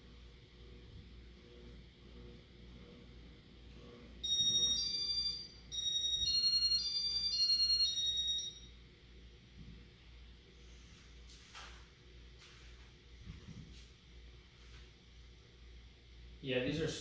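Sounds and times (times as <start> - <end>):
electronic beeper melody: 4.2 - 8.7.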